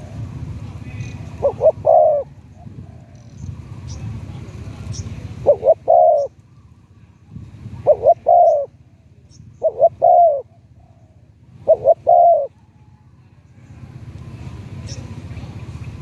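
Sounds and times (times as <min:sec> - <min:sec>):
faint low rumble: 0:00.0 - 0:16.0
dove cooing: 0:00.9 - 0:03.2, 0:05.2 - 0:06.4, 0:07.7 - 0:08.8, 0:09.6 - 0:12.6.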